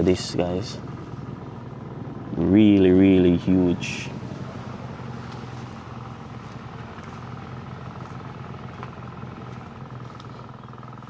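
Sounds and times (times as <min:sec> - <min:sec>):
engine humming steadily: 0:00.0 - 0:11.0.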